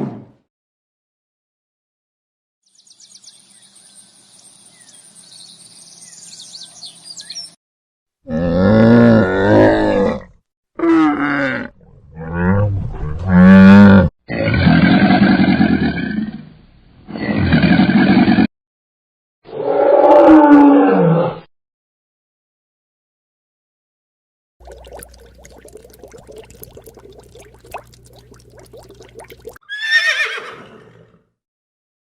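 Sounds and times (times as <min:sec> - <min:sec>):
large animal roaring: 0:08.2 - 0:16.4, 0:19.5 - 0:21.5.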